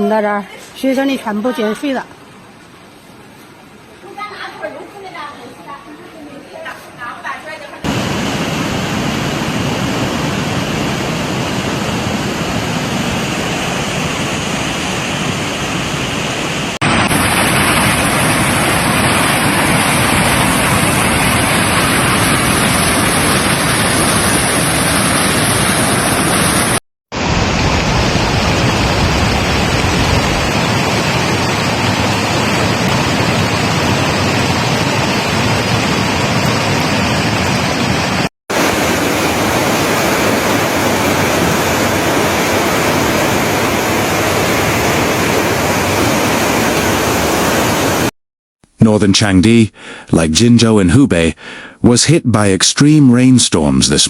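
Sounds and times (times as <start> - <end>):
floodwater rushing: 7.8 - 48.1.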